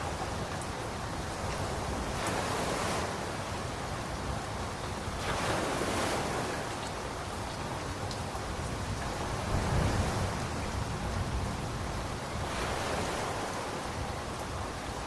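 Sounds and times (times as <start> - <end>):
ocean waves washing in: 1.8 - 3.8, 5.2 - 6.8.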